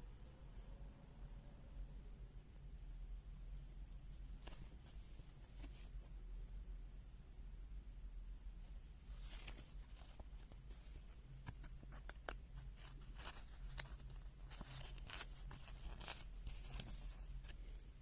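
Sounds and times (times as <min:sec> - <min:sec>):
paper rustling and clicking: 0:09.2 - 0:17.9.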